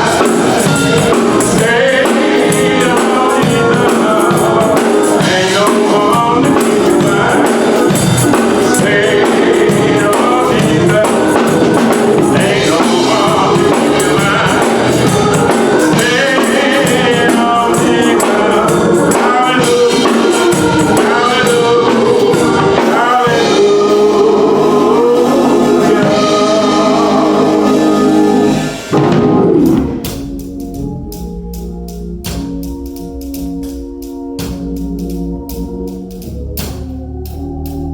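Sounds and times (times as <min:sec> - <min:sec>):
tambourine: 0:00.0 - 0:28.8
gospel choir singing: 0:00.0 - 0:30.1
organ chords: 0:00.0 - 0:37.9.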